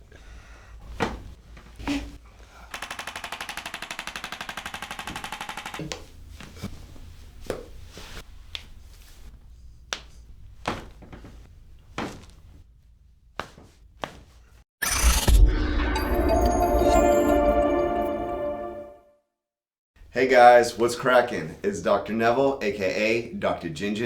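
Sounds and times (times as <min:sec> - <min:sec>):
adjusting instrument rapid tapping: 0:02.7 - 0:05.9.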